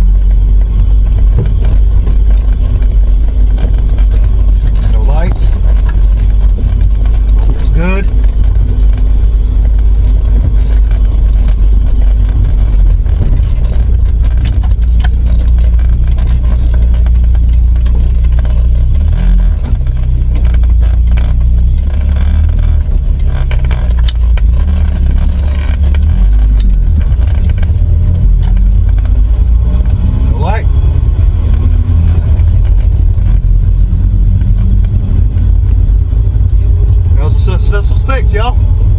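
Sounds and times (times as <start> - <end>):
car engine running: 0.0 - 38.9
low road rumble: 0.0 - 38.9.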